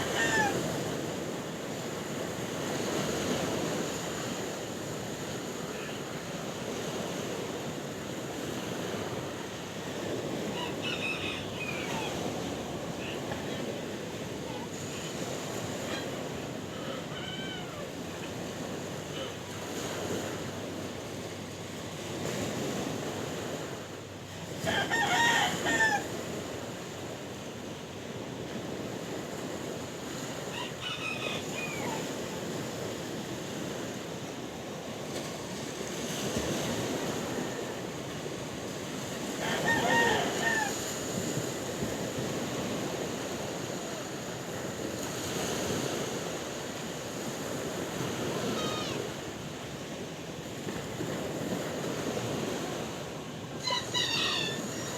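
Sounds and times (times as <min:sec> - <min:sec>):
rooster crowing: 0:00.0 - 0:00.8, 0:10.5 - 0:12.5, 0:16.7 - 0:18.0, 0:24.6 - 0:26.2, 0:30.5 - 0:32.4, 0:39.3 - 0:41.0, 0:53.6 - 0:54.9
sea waves: 0:00.0 - 0:54.9.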